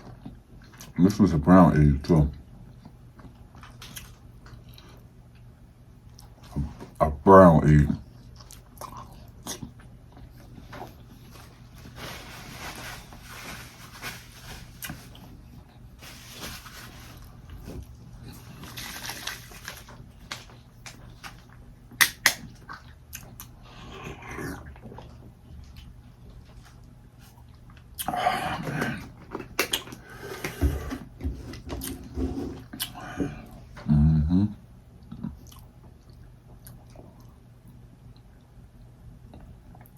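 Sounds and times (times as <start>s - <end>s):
chewing with wet mouth smacks: 8.2s - 10.6s, 35.0s - 37.4s.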